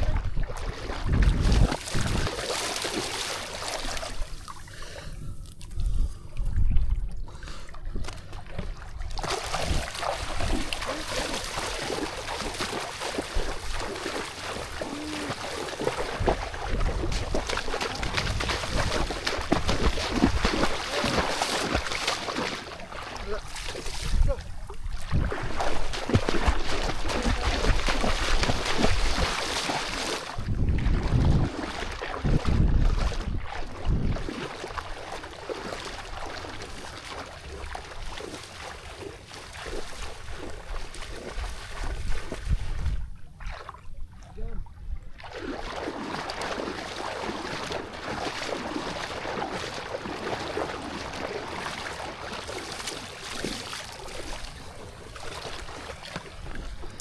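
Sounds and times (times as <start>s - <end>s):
wind gusting on microphone: 0.0s - 2.4s, 15.9s - 21.3s, 24.0s - 29.3s, 30.4s - 34.4s, 41.3s - 43.2s
water sloshing and splashing: 0.0s - 57.0s.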